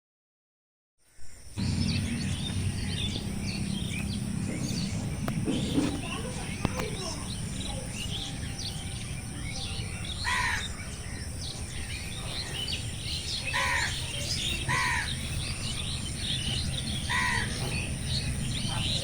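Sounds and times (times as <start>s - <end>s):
birds chirping and twittering: 1.0s - 19.0s
low rumble: 1.6s - 10.2s.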